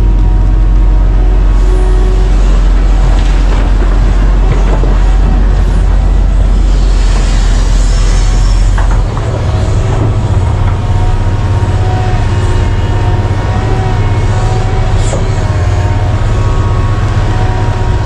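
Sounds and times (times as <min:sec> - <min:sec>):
diesel machinery rumbling: 0:00.0 - 0:18.0
high drone with whine: 0:00.0 - 0:18.0.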